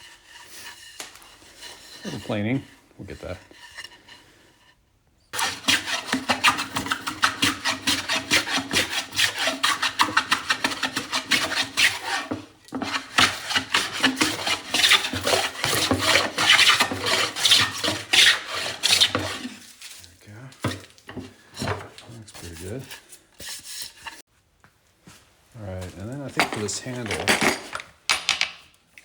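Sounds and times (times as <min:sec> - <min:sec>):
hand plane shaving wood: 0:00.0 - 0:04.8, 0:05.4 - 0:20.0.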